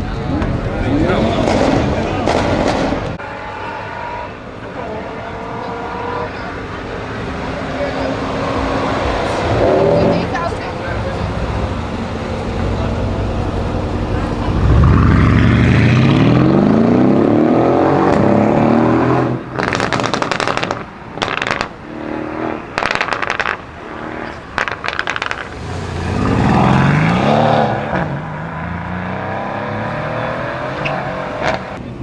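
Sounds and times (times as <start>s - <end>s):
exhaust crackles and pops: 0.0s - 3.2s, 19.3s - 27.2s
car engine accelerating hard: 0.0s - 31.8s.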